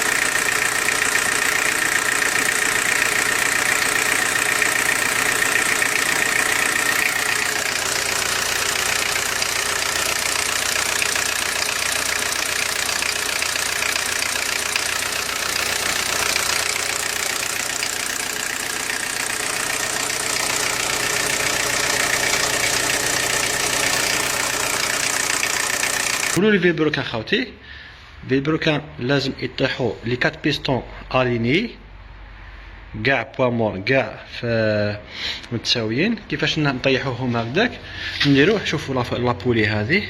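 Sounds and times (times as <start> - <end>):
engine running steadily: 0.0 - 26.4.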